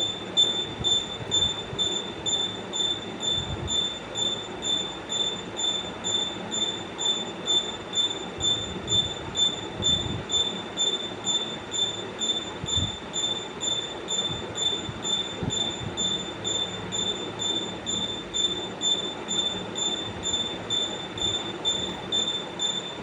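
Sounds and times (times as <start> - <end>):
pulsing high-pitched squeal: 0.0 - 23.0.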